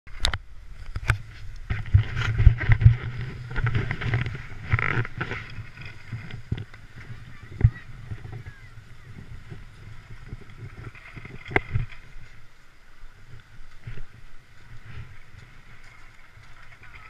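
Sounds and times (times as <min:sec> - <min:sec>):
wind buffeting microphone: 0:00.3 - 0:17.0
scraping noise: 0:00.8 - 0:12.3.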